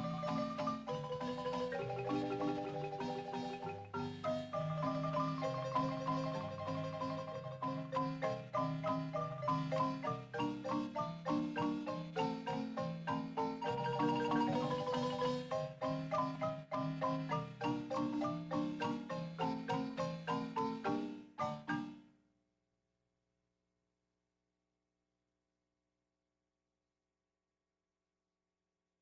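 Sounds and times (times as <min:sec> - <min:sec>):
lively marimba tune: 0:00.0 - 0:22.0.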